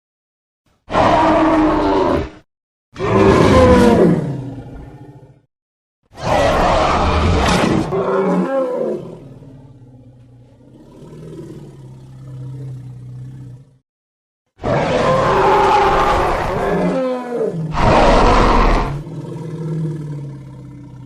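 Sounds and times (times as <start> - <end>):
loud creature roar: 0.9 - 2.4, 3.0 - 5.2, 6.2 - 9.5, 14.6 - 21.0.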